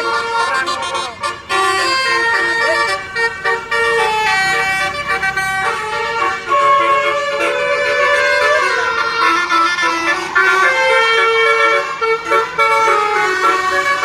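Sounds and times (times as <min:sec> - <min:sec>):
musical air horn tune: 0:00.0 - 0:14.0.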